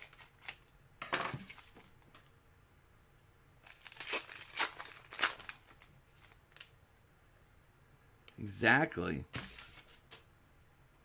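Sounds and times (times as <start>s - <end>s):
wrapper being torn and crinkled: 0.0s - 0.7s, 3.6s - 6.7s.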